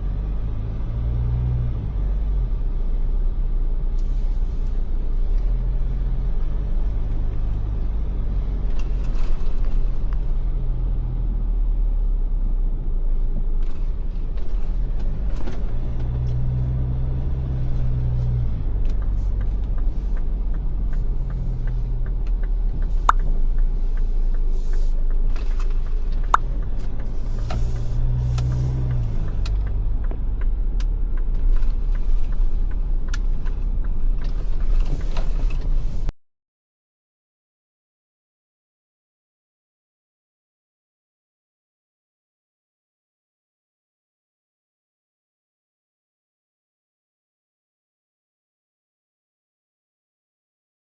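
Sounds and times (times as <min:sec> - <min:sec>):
road and engine rumble in car: 0:00.0 - 0:36.2.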